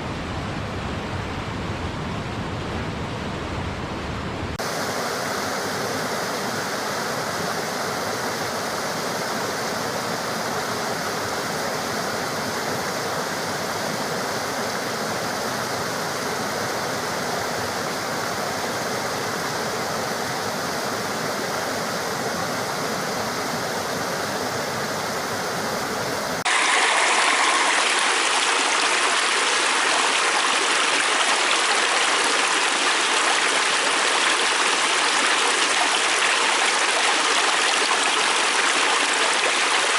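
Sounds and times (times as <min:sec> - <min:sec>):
stream water rushing: 0:04.6 - 0:39.9.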